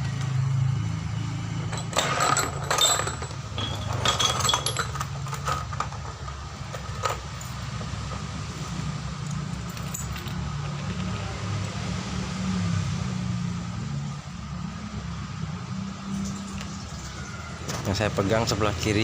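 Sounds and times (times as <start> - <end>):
small metal parts clinking: 1.6 - 8.4, 9.6 - 10.4.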